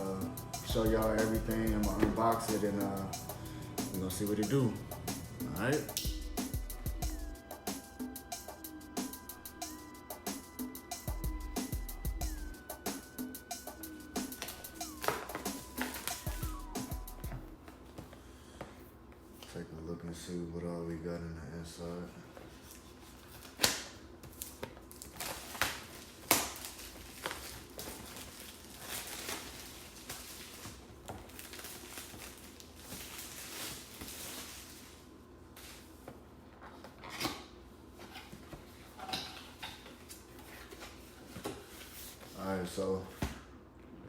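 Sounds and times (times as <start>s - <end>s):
packaging rustling: 14.2s - 16.6s, 22.5s - 36.0s.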